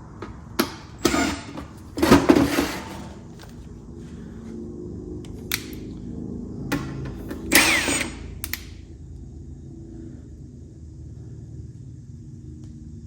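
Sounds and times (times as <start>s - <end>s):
steady low hum: 0.0s - 13.0s
powered screwdriver driving screw: 0.6s - 3.2s, 6.7s - 8.6s
clicks of handled parts: 5.2s - 6.0s, 8.4s - 8.8s.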